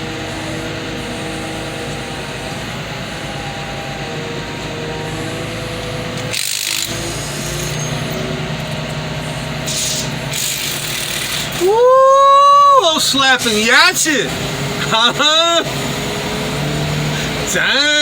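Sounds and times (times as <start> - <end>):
hydraulic car crusher running: 0.0 - 18.0
metal scraping and squealing: 0.1 - 11.8.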